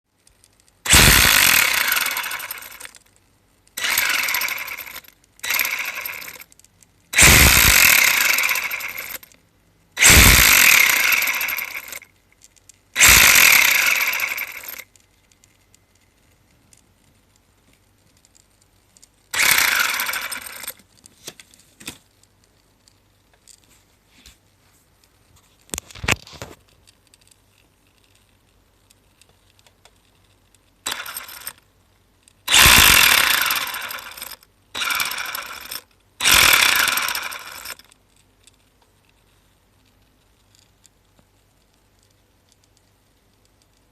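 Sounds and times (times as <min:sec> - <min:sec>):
toy car motor whirring rattle: 0:00.2 - 0:09.4, 0:10.0 - 0:16.9, 0:18.1 - 0:22.2, 0:30.8 - 0:38.7, 0:40.4 - 0:40.9.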